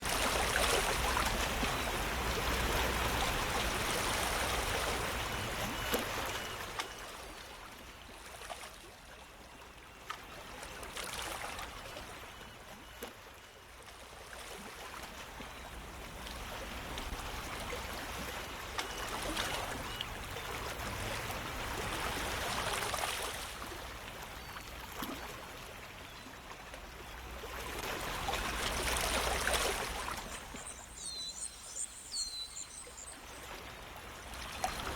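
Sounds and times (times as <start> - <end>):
flowing water rushing: 0.0 - 7.5, 27.6 - 34.9.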